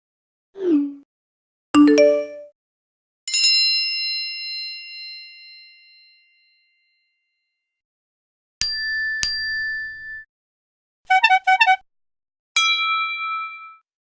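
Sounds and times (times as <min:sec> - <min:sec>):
bell-like chime: 0:03.3 - 0:07.7, 0:08.6 - 0:10.3, 0:12.6 - 0:13.8.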